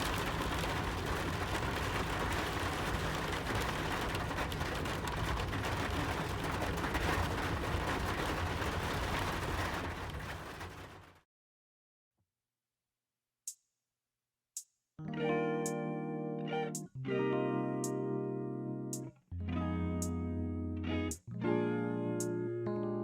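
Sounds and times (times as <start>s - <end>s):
wood fire crackling: 0.0s - 11.1s.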